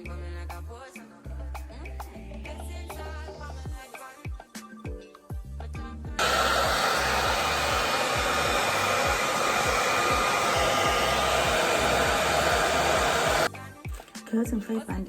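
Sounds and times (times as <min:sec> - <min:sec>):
background music with kick drum: 0:00.0 - 0:15.0
hair dryer blowing: 0:06.2 - 0:13.5.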